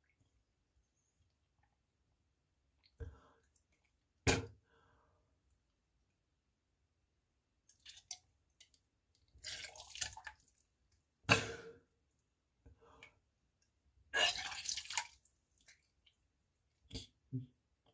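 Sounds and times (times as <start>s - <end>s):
spitting wet drips and splashes: 9.3s - 10.6s, 14.2s - 16.2s.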